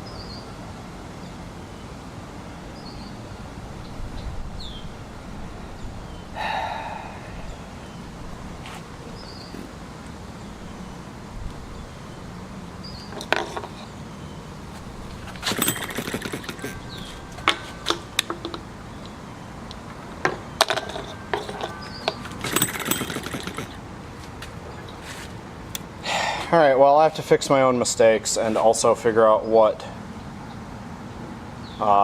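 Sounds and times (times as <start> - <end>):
metallic clicks from engine parts: 15.1 - 20.0, 20.6 - 23.8.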